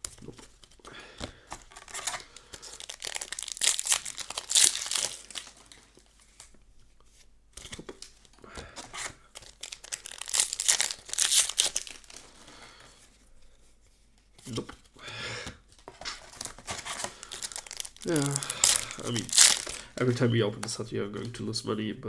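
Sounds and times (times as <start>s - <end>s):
foil wrappers tearing and crinkling: 1.5s - 6.0s, 7.7s - 12.5s, 16.1s - 20.3s.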